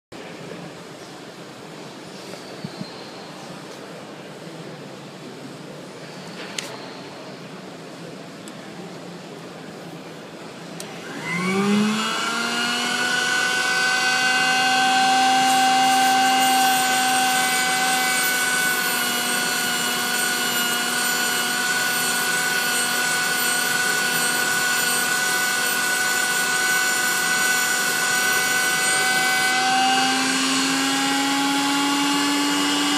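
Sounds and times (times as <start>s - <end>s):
grinder motor whining: 10.8s - 32.9s
grinder hiss: 11.2s - 32.9s.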